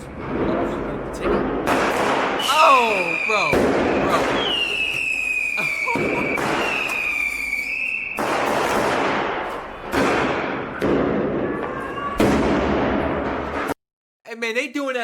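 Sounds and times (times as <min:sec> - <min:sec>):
firework bangs: 0:00.1 - 0:13.7
firework whistle: 0:02.3 - 0:08.8.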